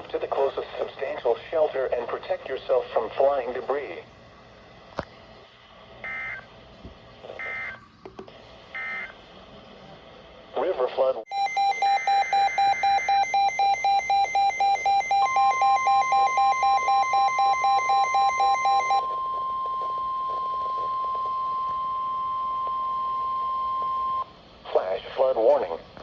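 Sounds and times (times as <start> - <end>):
steady warning alarm tone: 6.0 - 6.5, 7.4 - 7.8, 11.3 - 24.3
rapid electronic beeps: 11.3 - 19.6.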